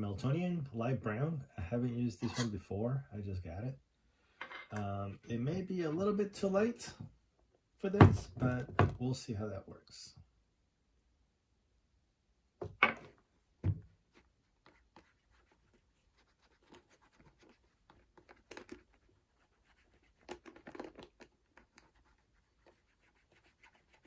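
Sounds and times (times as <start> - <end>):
rubbing on leather boot: 14.0 - 24.0.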